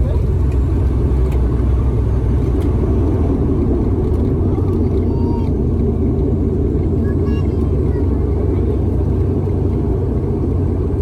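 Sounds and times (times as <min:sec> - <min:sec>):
airliner cabin engine rumble: 0:00.0 - 0:11.0.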